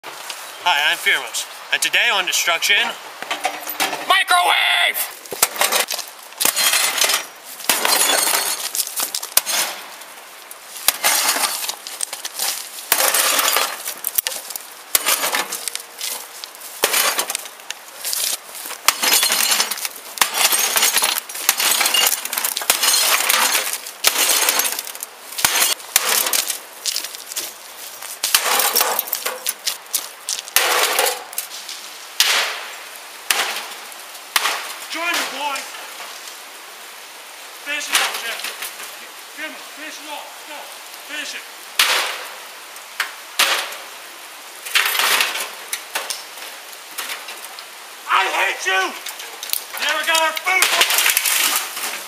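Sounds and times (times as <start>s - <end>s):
shards and metal parts clinking: 3.3s - 4.1s, 5.4s - 8.8s, 10.9s - 11.8s, 12.9s - 16.2s, 18.9s - 26.6s, 28.3s - 29.6s
glass breaking: 5.3s - 9.9s, 10.8s - 27.6s, 28.2s - 31.5s, 33.3s - 35.4s, 37.8s - 38.7s, 44.6s - 46.2s, 49.0s - 52.0s.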